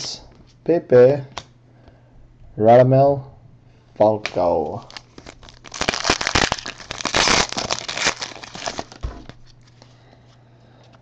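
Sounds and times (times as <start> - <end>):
foil wrapper crinkling and tearing: 4.3 - 9.8.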